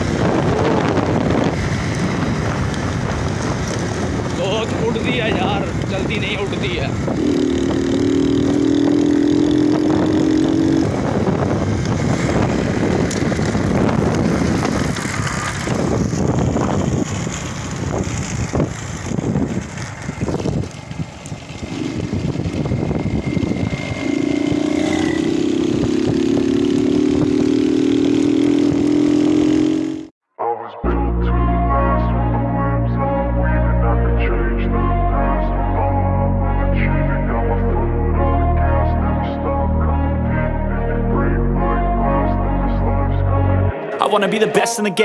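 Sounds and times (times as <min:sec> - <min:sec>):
engine droning at speed: 0:00.0 - 0:30.1
irregular crackles: 0:13.0 - 0:22.6.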